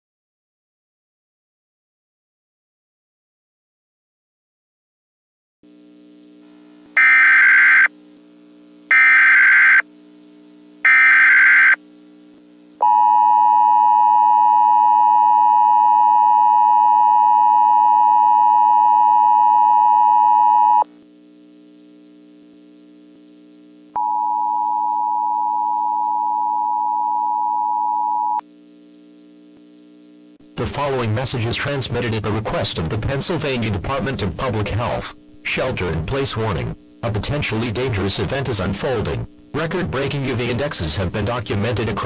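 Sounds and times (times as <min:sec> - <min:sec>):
screeching digital data tones: 0:07.0 - 0:07.9, 0:08.9 - 0:09.8, 0:10.9 - 0:11.8
single steady tone: 0:07.0 - 0:07.9, 0:10.9 - 0:11.8, 0:24.0 - 0:28.4
two-tone attention signal: 0:07.0 - 0:07.9, 0:08.9 - 0:09.8, 0:10.9 - 0:11.8.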